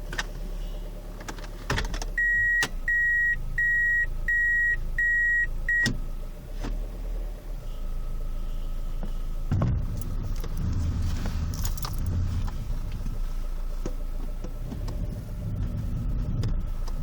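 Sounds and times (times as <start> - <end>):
car engine idling: 0.0 - 17.0
reverse warning beeper: 2.2 - 6.0.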